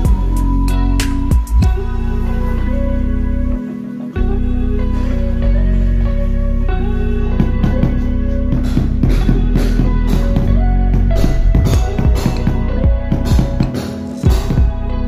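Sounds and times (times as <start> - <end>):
drums: 0.0 - 1.8, 7.4 - 15.0
guitar and bass notes: 0.0 - 15.0.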